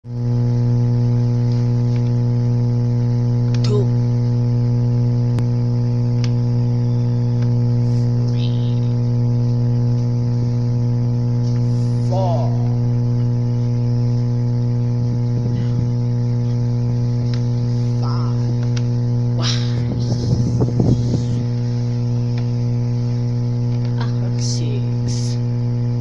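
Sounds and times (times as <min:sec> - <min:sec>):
loud electrical hum: 0:00.0 - 0:26.0.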